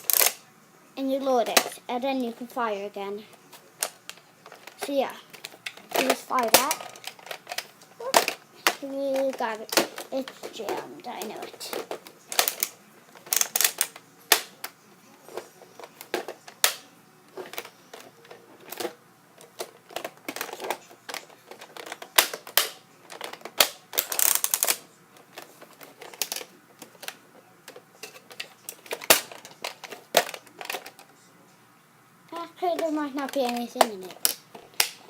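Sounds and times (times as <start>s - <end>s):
plastic toy blaster clicks: 0.0s - 0.4s, 5.7s - 7.6s, 11.7s - 14.5s, 21.6s - 24.8s.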